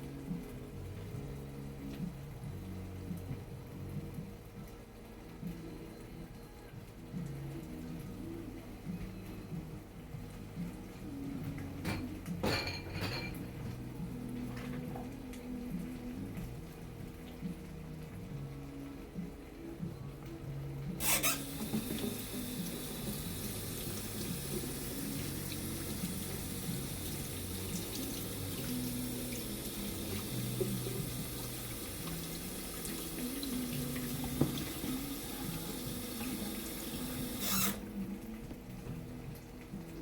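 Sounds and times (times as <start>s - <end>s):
water running into sink: 20.9s - 38.4s
kitchen tap turning: 21.0s - 37.8s.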